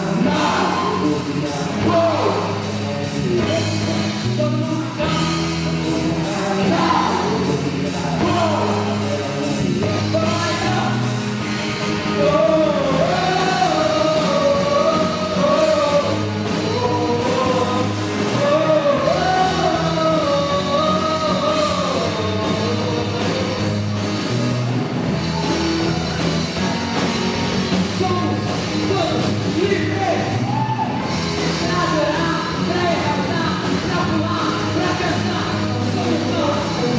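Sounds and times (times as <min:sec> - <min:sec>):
rock band playing: 0:00.0 - 0:36.9.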